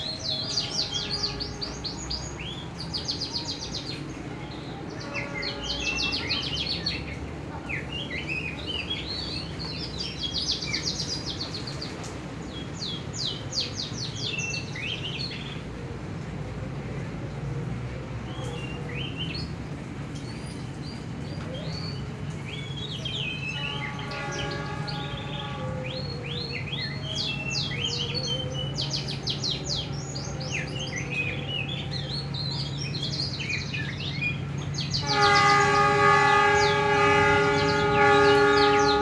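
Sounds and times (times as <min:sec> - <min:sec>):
songbirds chirping: 0:00.0 - 0:39.0
loud horn-like tone: 0:35.0 - 0:39.0.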